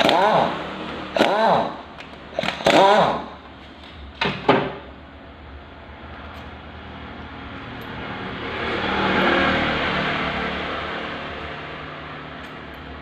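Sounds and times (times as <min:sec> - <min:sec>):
passing vehicle motor hum: 0:05.9 - 0:13.0.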